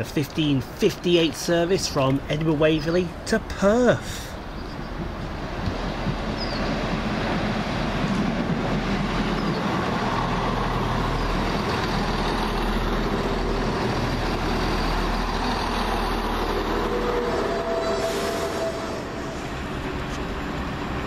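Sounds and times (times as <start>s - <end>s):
diesel train engines running: 0.0s - 21.0s
rail rumble: 0.0s - 21.0s.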